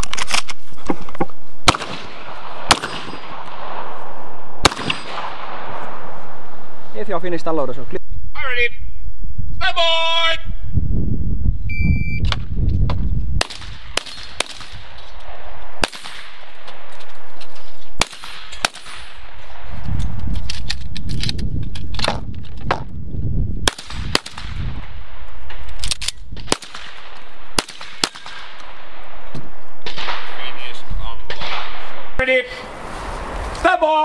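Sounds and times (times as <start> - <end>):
shotgun shots: 1.6 - 4.0, 4.6 - 6.5, 13.4 - 16.6, 18.0 - 19.7, 23.6 - 25.7, 26.3 - 29.2, 29.8 - 32.1.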